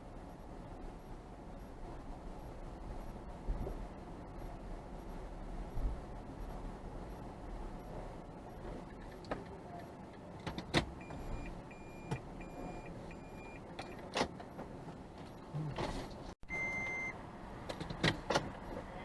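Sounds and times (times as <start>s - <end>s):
electronic chime beeping: 16.5s - 17.1s.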